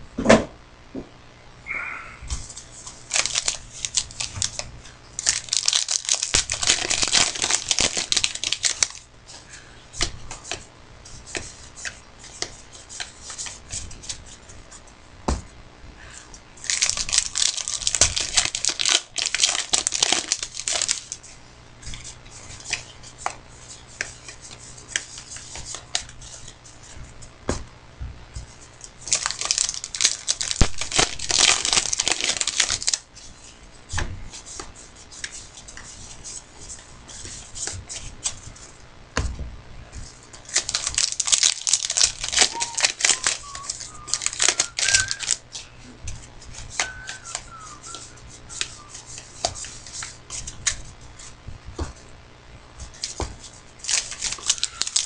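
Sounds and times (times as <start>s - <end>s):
card pack wrappers tearing: 2.4s - 9.0s, 16.6s - 21.2s, 29.0s - 33.1s, 40.4s - 45.5s, 46.5s - 50.9s, 52.9s - 55.0s
cards clicking and tapping: 11.3s - 14.2s, 40.4s - 50.9s, 52.8s - 55.0s.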